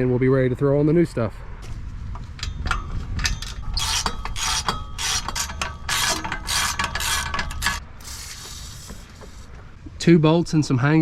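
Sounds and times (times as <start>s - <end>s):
socket ratchet clicking: 2.4s - 7.8s.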